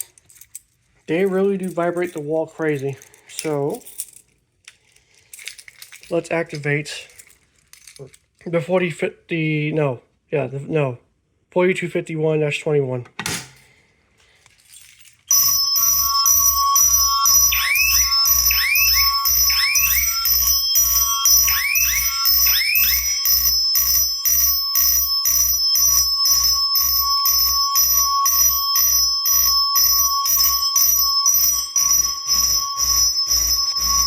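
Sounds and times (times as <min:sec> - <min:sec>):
mechanical fire alarm chime: 0:15.3 - 0:34.0
high-pitched electronic tones: 0:15.4 - 0:34.0
rising chirp: 0:15.9 - 0:24.0.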